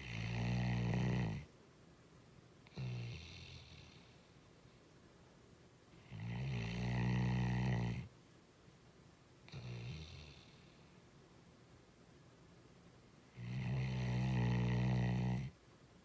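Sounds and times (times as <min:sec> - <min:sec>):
person snoring: 0:00.0 - 0:01.5, 0:06.0 - 0:08.0, 0:13.4 - 0:15.6.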